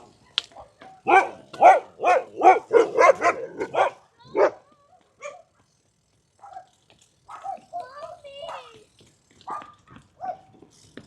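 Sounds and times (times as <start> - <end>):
dog barking: 0.6 - 4.6, 5.2 - 5.5, 6.4 - 6.7, 7.3 - 7.7, 9.5 - 10.5.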